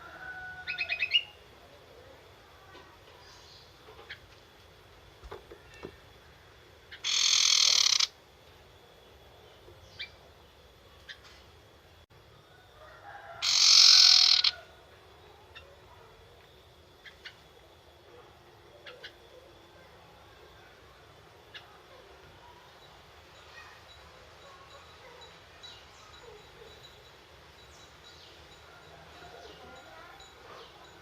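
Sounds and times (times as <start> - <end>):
bird rasping chatter calls: 6.9 - 8.2, 13.4 - 14.6.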